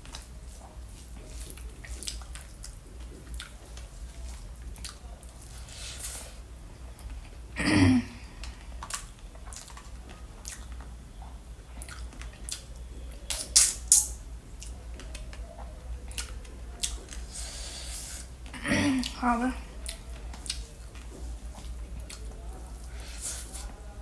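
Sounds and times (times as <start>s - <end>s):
person chewing fruit: 0.0s - 7.4s, 8.0s - 23.7s.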